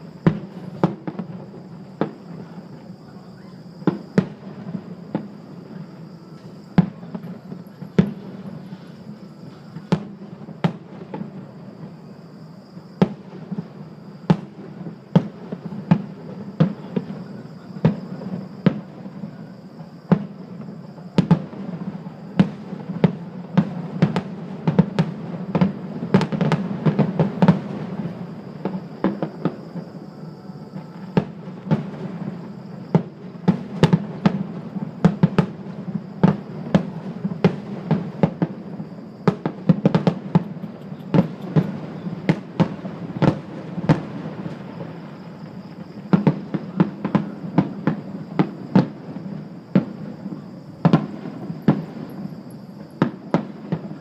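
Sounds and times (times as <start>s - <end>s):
firework crackles: 0.0s - 54.0s
firework shells bursting: 39.3s - 44.6s.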